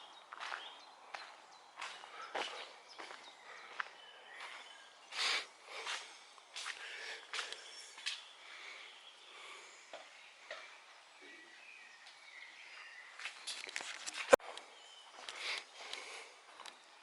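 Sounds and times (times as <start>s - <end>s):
faint bird chirps: 0.0s - 15.9s
footsteps crunching on debris: 0.3s - 8.3s, 13.2s - 15.5s.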